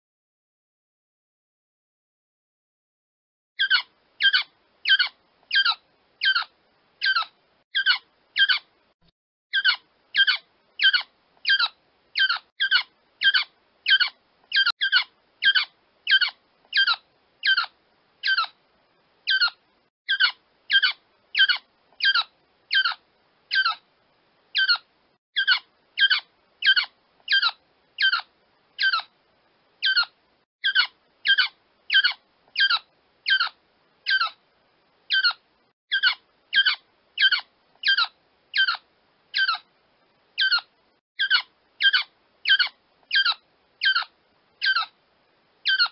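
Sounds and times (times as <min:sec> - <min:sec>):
quail calling: 0:29.8 - 0:34.4, 0:35.1 - 0:38.8, 0:40.4 - 0:44.9, 0:45.7 - 0:45.9.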